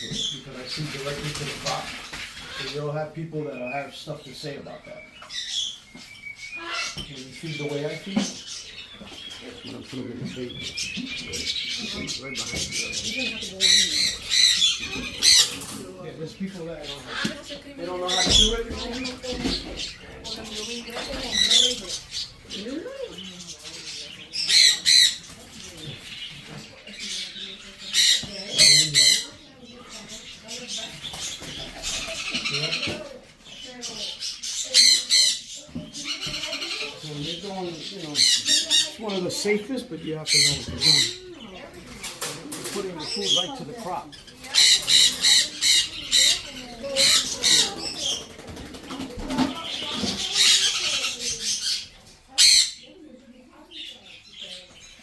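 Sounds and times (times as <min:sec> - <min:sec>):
parrots screeching: 0:01.9 - 0:02.8, 0:05.2 - 0:09.4, 0:10.6 - 0:15.8, 0:16.8 - 0:25.3, 0:26.9 - 0:29.5, 0:30.1 - 0:39.2, 0:40.2 - 0:41.5, 0:43.0 - 0:48.3, 0:49.4 - 0:52.9.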